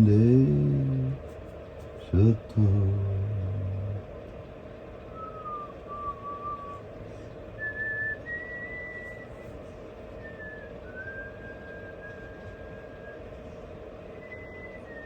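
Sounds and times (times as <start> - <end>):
steady hum: 0.0 - 15.0
soft whistled notes: 5.1 - 7.0, 7.6 - 15.0.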